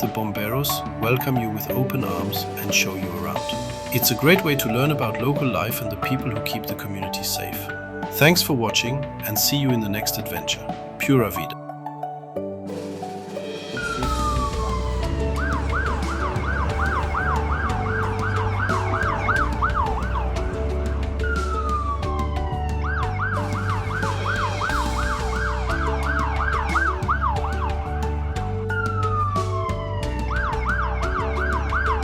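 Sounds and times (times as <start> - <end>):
steady low tones: 13.6 - 31.8
electronic siren wailing and warbling: 13.8 - 29.2.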